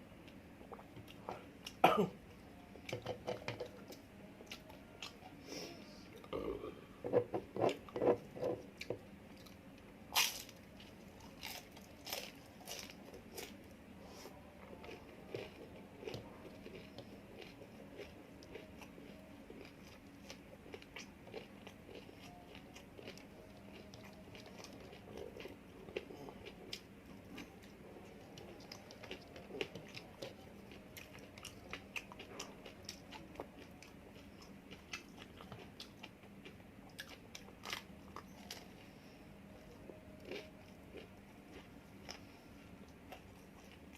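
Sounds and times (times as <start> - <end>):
person chewing crunchy food: 10.2 - 13.6, 14.6 - 39.0, 39.6 - 43.9.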